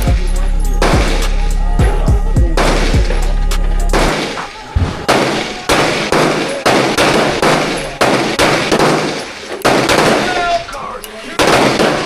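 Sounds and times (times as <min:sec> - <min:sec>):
gunshots with echo: 0:03.9 - 0:10.4, 0:11.4 - 0:12.0.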